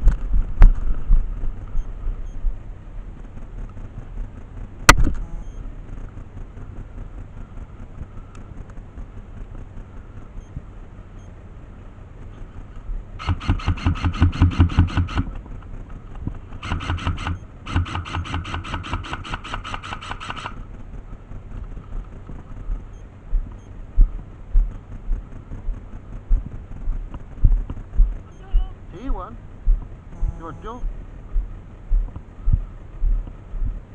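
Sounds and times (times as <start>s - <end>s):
airsoft rifle firing bursts: 13.2s - 15.4s, 16.5s - 20.7s
low thumps: 21.6s - 28.9s, 29.5s - 33.9s.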